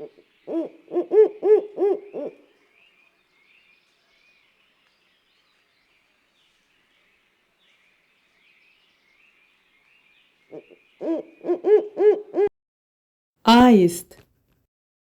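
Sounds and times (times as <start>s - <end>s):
owl hooting: 0.5s - 2.4s.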